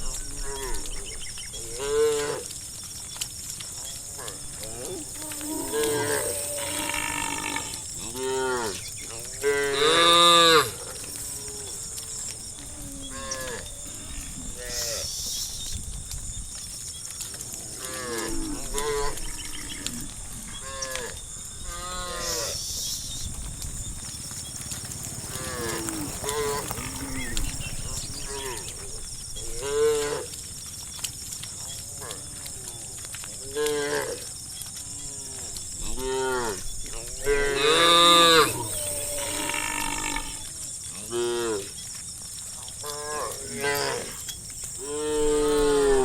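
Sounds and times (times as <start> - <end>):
cattle mooing: 4.2 - 15.2, 23.4 - 29.0, 42.8 - 46.0.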